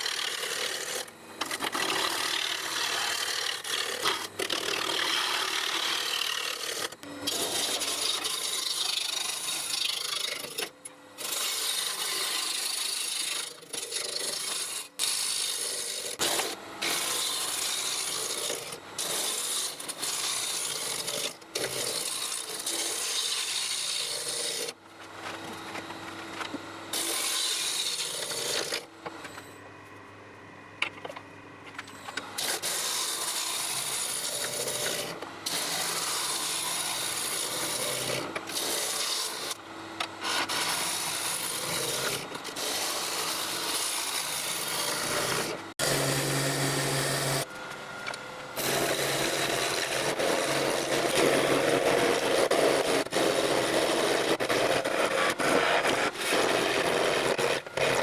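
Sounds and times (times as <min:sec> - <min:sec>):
lathe tool cutting wood: 0:00.0 - 0:10.6, 0:11.2 - 0:24.8, 0:25.4 - 0:28.9, 0:32.2 - 0:47.6, 0:48.6 - 0:58.0
lathe running: 0:32.2 - 0:58.0.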